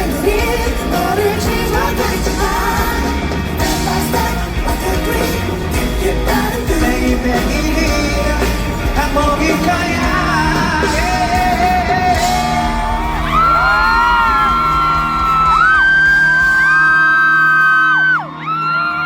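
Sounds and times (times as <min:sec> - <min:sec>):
audience yelling and cheering: 0:00.0 - 0:19.0
pop-rock band playing live: 0:00.0 - 0:19.0
high drawn-out screams: 0:12.4 - 0:19.0.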